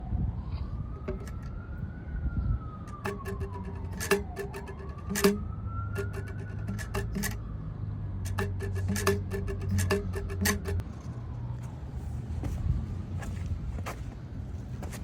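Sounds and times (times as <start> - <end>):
siren wailing: 0.0 - 11.9
clicks and knocks: 1.0 - 1.5, 2.9 - 7.4, 8.2 - 10.8.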